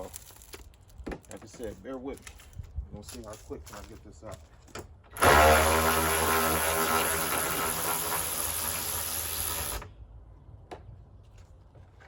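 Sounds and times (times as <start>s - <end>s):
power tool running: 5.2s - 9.9s.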